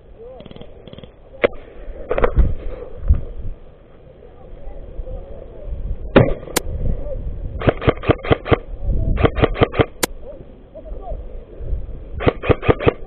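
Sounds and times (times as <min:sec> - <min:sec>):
airsoft gun firing: 0:07.6 - 0:08.6, 0:09.2 - 0:10.1, 0:12.2 - 0:13.0.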